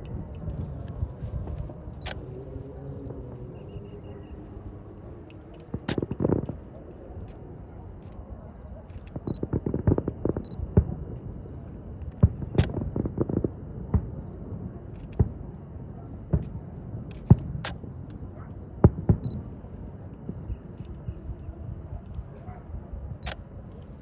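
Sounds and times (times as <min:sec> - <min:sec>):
fireworks popping: 0:05.5 - 0:06.8, 0:09.1 - 0:11.4, 0:12.0 - 0:14.2, 0:18.8 - 0:19.4
fireworks banging: 0:09.2 - 0:11.2, 0:18.8 - 0:19.4.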